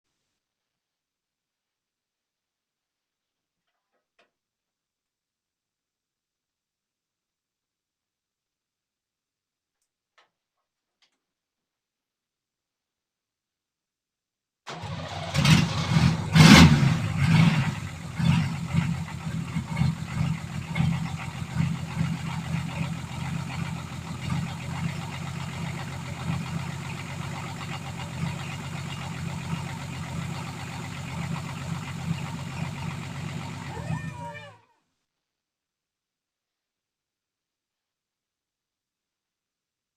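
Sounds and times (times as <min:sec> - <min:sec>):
diesel engine starting and idling: 0:14.7 - 0:34.6.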